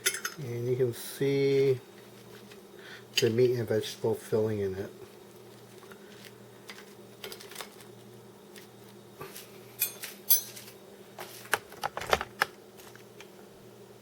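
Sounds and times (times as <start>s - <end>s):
steady low hum: 0.0s - 14.0s
utensils clinking on plate: 9.8s - 10.7s.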